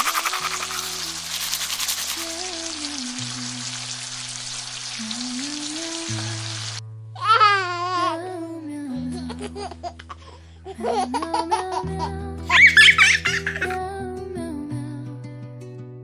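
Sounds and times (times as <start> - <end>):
high wavering voice: 0.0 - 2.4, 12.5 - 13.8.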